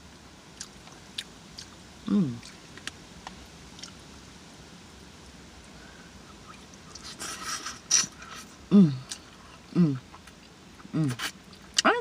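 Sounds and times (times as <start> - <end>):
wet chewing and lip smacking: 0.5 - 4.0.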